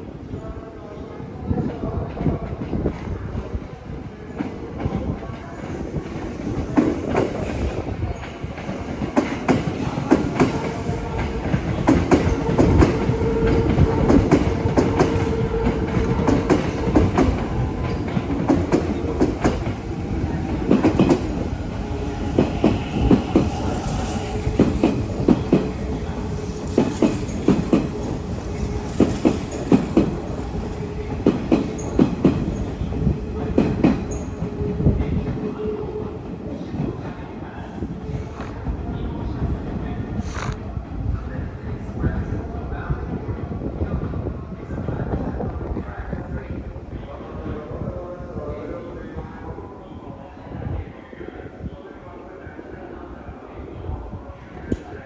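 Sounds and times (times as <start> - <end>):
train rumble: 1.2 - 52.5
steady train whine: 2.4 - 55.0
train wheels clacking: 4.4 - 35.6, 40.2 - 40.6.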